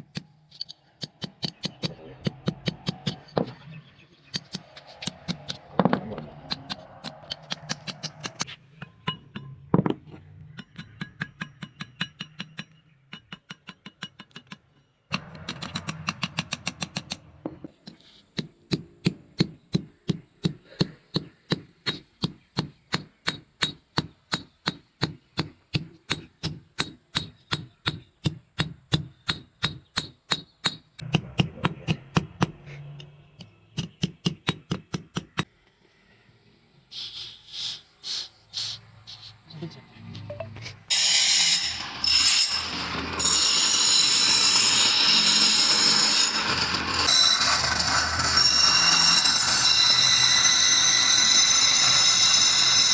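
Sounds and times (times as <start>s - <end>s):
hammer striking metal: 4.3s - 10.0s, 15.1s - 17.7s.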